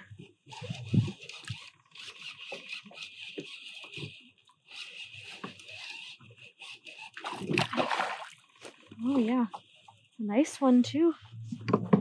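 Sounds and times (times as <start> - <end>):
fishing reel whirring: 0.4 - 7.6.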